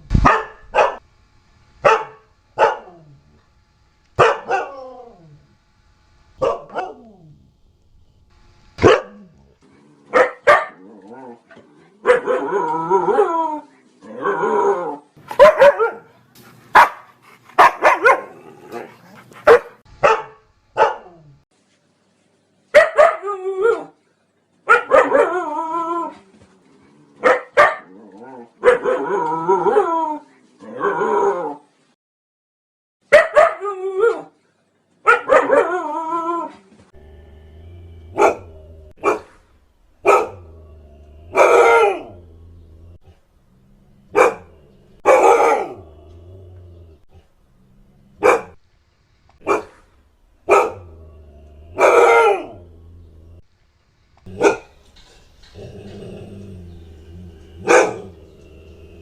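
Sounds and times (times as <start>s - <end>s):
dog barking and yelping: 1.8s - 3.0s, 4.2s - 5.2s, 6.4s - 7.2s, 8.8s - 9.3s, 10.1s - 10.8s, 12.0s - 13.4s, 14.2s - 16.1s, 16.7s - 21.2s, 22.8s - 23.9s, 24.7s - 26.1s, 27.2s - 27.9s, 28.6s - 30.2s, 33.1s - 34.3s, 35.0s - 36.5s, 38.1s - 39.4s, 40.0s - 43.0s, 44.1s - 46.2s, 48.2s - 48.6s, 49.4s - 49.9s, 50.5s - 53.4s, 54.2s - 54.8s, 57.3s - 59.0s.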